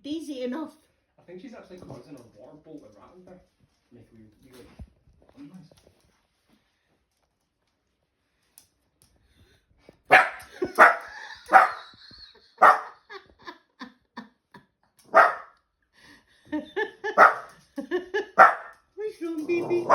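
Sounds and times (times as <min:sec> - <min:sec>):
dog barking: 0:10.1 - 0:11.9, 0:12.6 - 0:13.0, 0:15.1 - 0:15.5, 0:17.1 - 0:17.5, 0:18.4 - 0:18.8, 0:19.5 - 0:19.9.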